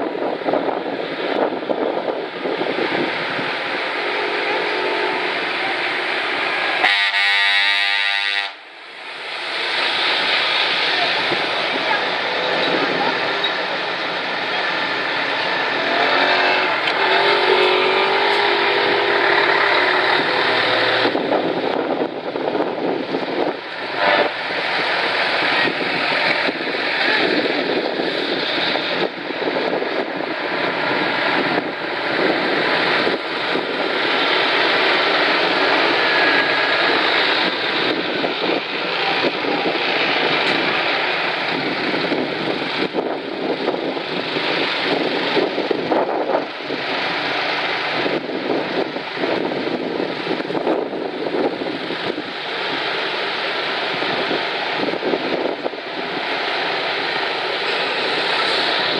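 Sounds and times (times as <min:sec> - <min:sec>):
trucks driving past: 0:02.2 - 0:58.9
voices: 0:09.5 - 0:21.8, 0:24.3 - 0:28.7.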